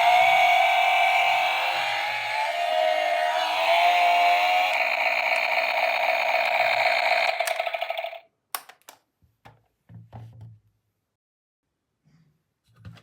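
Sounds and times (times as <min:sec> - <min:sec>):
small motor whirring: 0:00.0 - 0:08.2.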